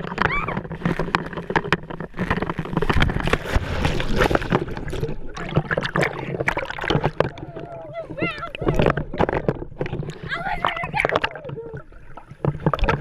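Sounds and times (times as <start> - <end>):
water splashing and sloshing: 0.0 - 13.0.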